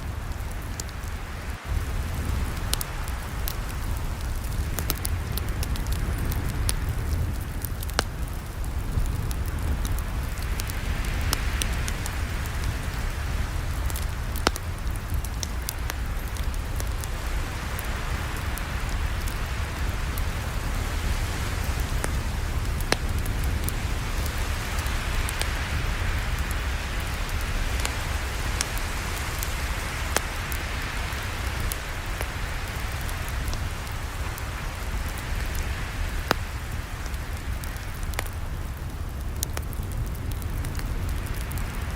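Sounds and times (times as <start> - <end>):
campfire crackling: 0.0 - 41.9
fire rushing hiss: 0.0 - 41.9.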